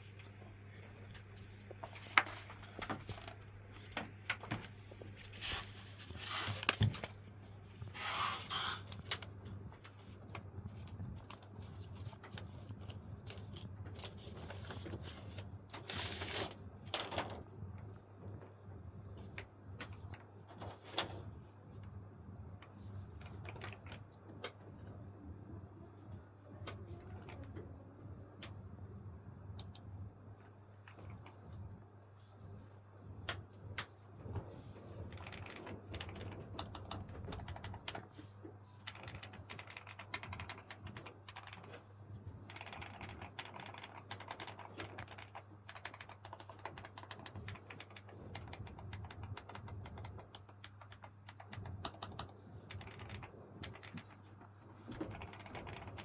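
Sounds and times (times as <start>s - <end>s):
low steady hum: 0.0s - 56.0s
mechanical keyboard clicks: 23.2s - 24.6s, 35.0s - 38.1s, 38.8s - 41.8s, 42.4s - 54.2s, 54.8s - 56.0s.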